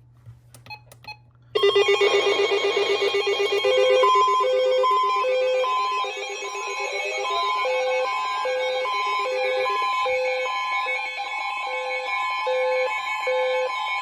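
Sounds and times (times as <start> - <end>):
alert alarm alternating beeps: 1.6 - 10.9
steady buzzing tone: 1.6 - 12.1.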